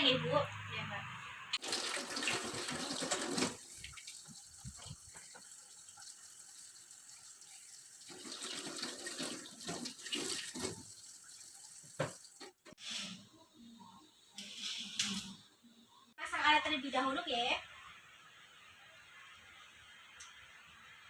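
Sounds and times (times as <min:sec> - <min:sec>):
water running from a tap: 0:01.6 - 0:12.7.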